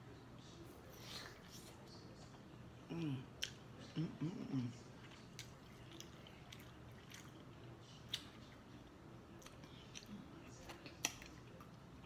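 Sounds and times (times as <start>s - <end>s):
person chewing food: 2.9s - 12.0s.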